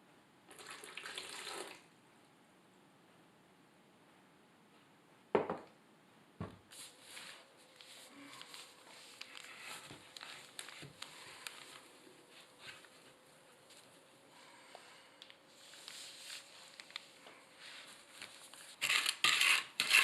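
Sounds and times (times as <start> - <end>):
grout scraping and rustling: 15.6 - 20.0.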